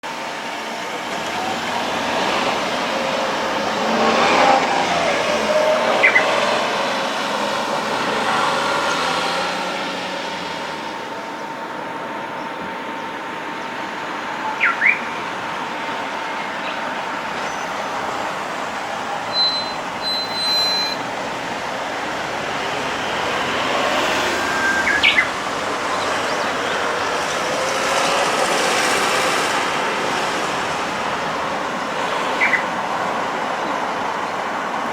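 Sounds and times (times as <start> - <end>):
vehicles passing: 0.0 - 34.9
short high chirps: 19.3 - 21.1.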